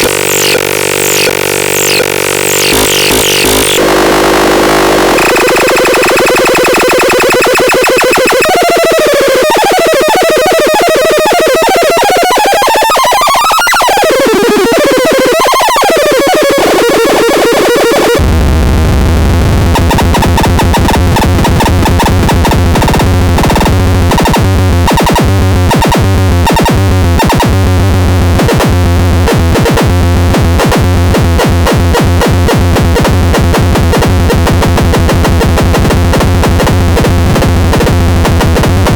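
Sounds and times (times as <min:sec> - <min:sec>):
loud low buzz: 0:00.0 - 0:09.3, 0:18.2 - 0:38.9
fast pulsing electronic pattern: 0:00.0 - 0:18.3, 0:19.5 - 0:38.9
synthesized tone sweeping in pitch: 0:00.0 - 0:18.3, 0:19.6 - 0:38.9.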